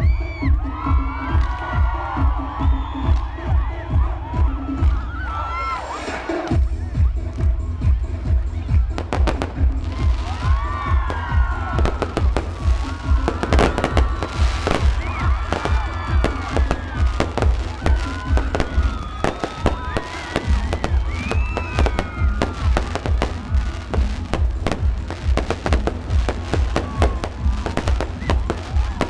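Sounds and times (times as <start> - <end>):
loud music: 0.0 - 29.0
fireworks bangs and crackles: 8.3 - 29.0
whistling fireworks: 10.2 - 29.0.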